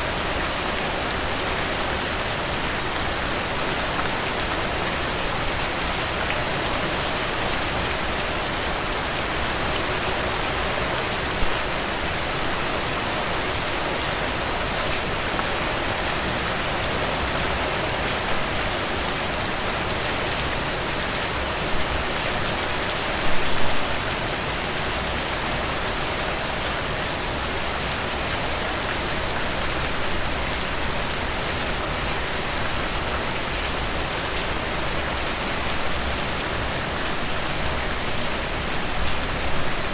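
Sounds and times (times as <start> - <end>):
rain falling on leaves: 0.0 - 39.9.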